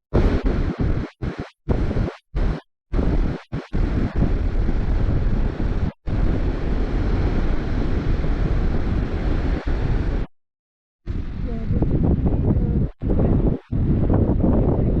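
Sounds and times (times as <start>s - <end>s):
wind buffeting microphone: 1.7s - 10.3s, 11.1s - 15.0s.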